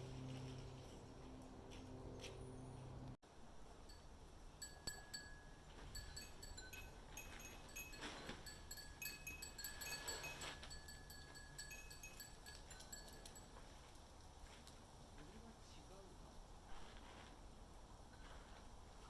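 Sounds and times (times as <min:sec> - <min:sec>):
low steady hum: 0:00.0 - 0:13.5
wind chimes tinkling: 0:03.8 - 0:13.6.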